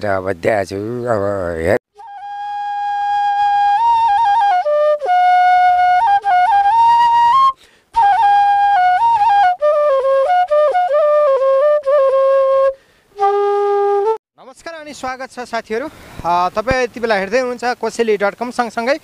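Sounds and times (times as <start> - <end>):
bamboo flute melody: 1.9 - 14.2.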